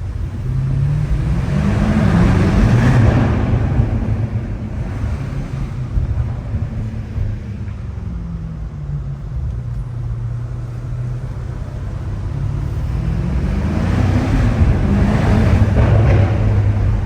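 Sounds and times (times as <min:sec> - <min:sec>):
car engine accelerating: 0:00.0 - 0:17.0.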